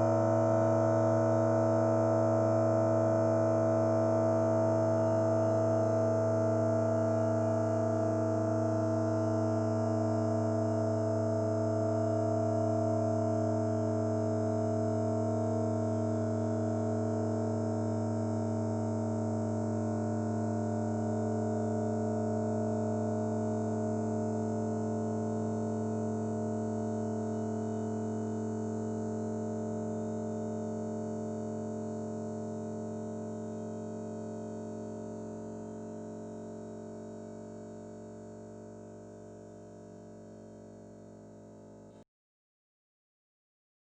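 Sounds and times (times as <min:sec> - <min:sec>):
low buzzing voice drone: 0:00.0 - 0:17.8.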